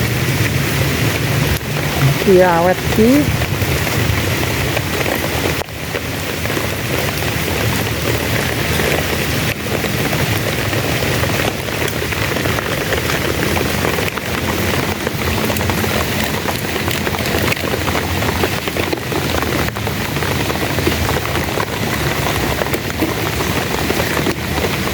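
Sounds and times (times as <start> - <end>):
heavy rain falling: 0.0 - 24.9
low rumble: 1.8 - 4.8.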